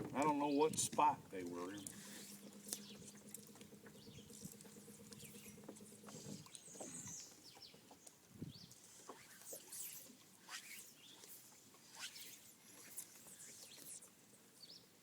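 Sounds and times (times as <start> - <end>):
faint steady hum: 0.0 - 10.1.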